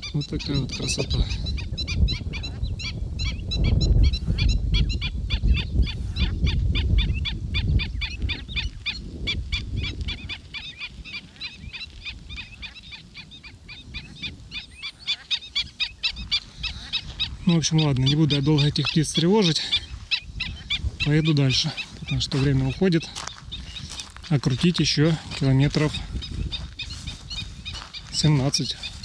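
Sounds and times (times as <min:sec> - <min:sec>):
flock of birds calling: 0:00.0 - 0:29.0.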